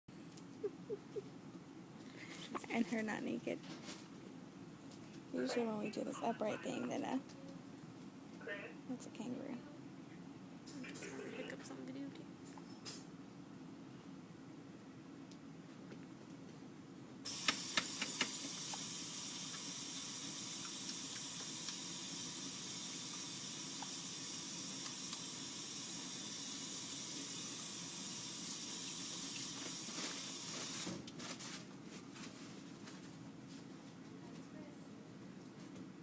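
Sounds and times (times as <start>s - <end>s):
sharp clicks: 17.3s - 18.4s
steady rushing hiss: 17.3s - 30.9s.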